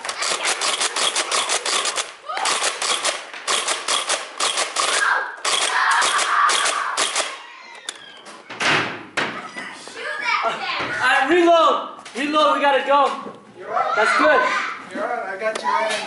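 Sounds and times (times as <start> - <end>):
foam-dart blasters firing: 0.0 - 7.4.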